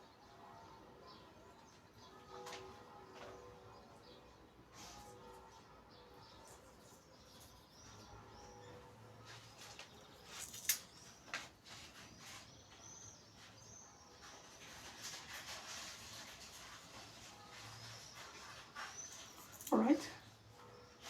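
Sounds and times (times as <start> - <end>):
handling noises: 6.4 - 20.2.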